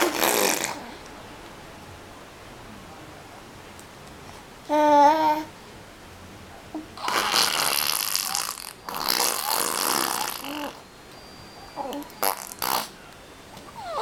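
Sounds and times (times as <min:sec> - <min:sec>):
baby blowing raspberries: 0:00.0 - 0:00.9, 0:07.0 - 0:10.8, 0:11.8 - 0:13.0.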